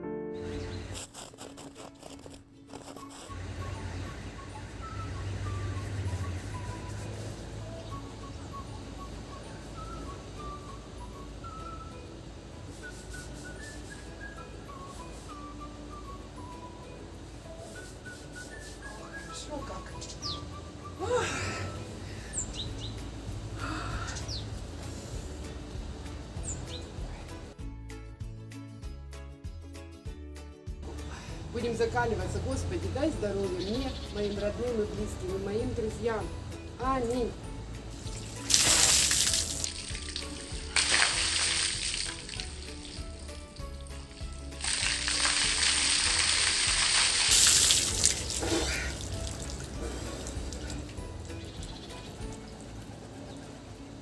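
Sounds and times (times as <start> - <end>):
music: 0.0 - 54.0
small birds chirping: 0.2 - 1.0, 19.2 - 21.0, 22.1 - 24.8, 26.4 - 27.4, 31.9 - 36.2, 50.2 - 54.0
water trickling: 37.0 - 53.0
water splashing over person: 38.0 - 51.0.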